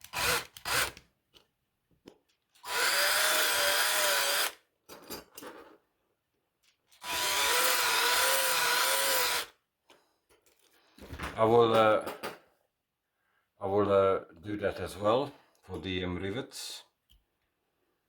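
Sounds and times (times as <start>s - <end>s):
electric drill running: 0.0s - 1.0s, 2.6s - 4.6s, 7.0s - 9.5s.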